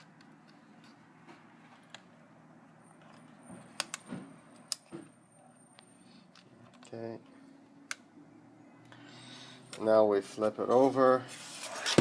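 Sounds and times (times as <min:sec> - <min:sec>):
laptop parts clicking: 0:02.9 - 0:04.9.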